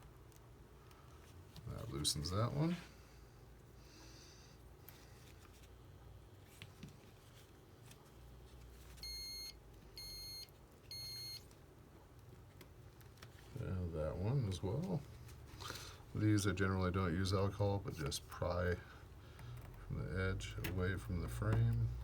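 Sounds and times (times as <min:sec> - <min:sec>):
short electronic beeps: 0:09.0 - 0:11.4.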